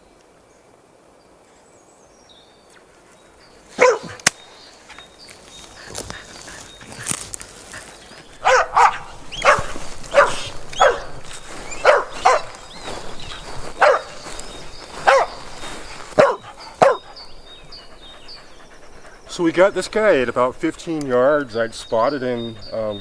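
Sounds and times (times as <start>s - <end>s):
dog barking: 3.8s - 4.2s, 8.4s - 12.6s, 13.8s - 14.2s, 15.0s - 15.4s, 16.2s - 17.2s.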